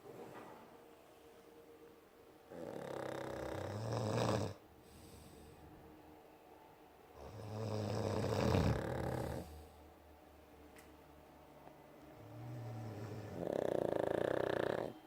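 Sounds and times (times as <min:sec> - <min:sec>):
person snoring: 0:02.5 - 0:05.4, 0:07.2 - 0:09.8, 0:12.2 - 0:15.0.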